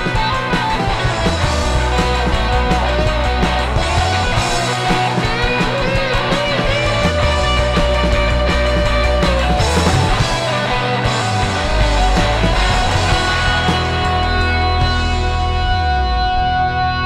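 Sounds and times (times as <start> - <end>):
rock music with electric guitar: 0.0 - 17.0.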